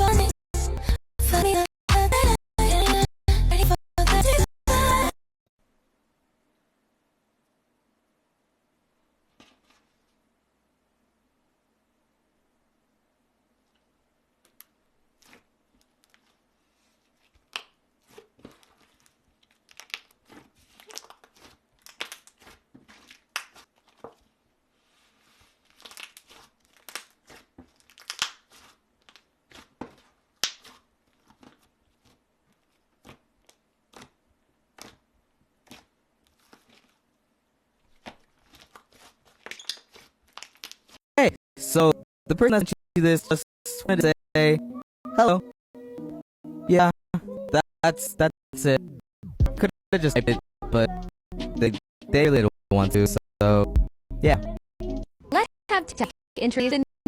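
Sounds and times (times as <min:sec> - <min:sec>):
slime crackling and popping: 0:18.6 - 0:24.0, 0:25.6 - 0:29.7, 0:30.4 - 0:30.8, 0:38.0 - 0:41.0.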